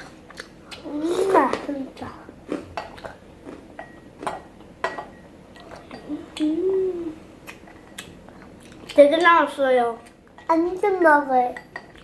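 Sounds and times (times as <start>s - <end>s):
child humming mmm: 6.0s - 7.2s.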